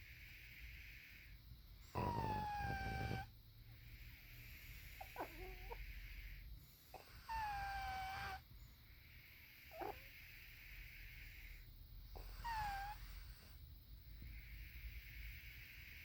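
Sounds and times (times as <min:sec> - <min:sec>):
soft breathing: 0:00.0 - 0:16.0
squeaky snoring: 0:01.8 - 0:03.3, 0:04.3 - 0:08.4, 0:09.5 - 0:13.6.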